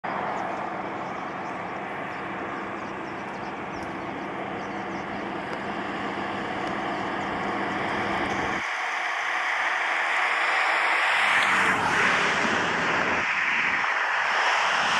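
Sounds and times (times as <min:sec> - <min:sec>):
deep rumble: 0:10.6 - 0:14.9.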